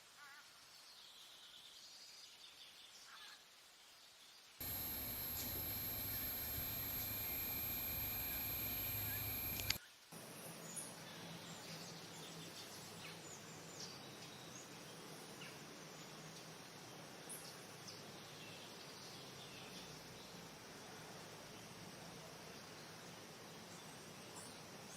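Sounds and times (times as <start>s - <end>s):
background hiss: 4.6s - 9.8s
high insect drone: 4.6s - 9.8s.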